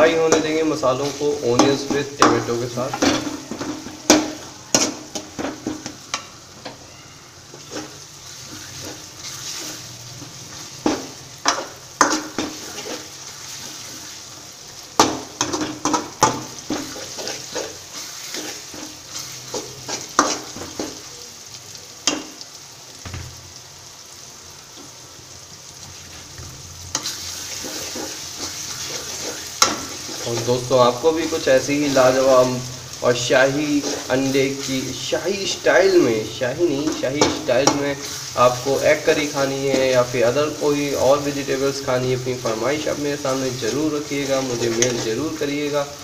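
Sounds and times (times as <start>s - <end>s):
masala sizzling in oil: 0.0s - 46.0s
utensil scraping and clacking pan: 7.5s - 13.1s, 15.0s - 21.0s, 26.9s - 30.6s, 33.6s - 34.8s, 43.6s - 45.3s.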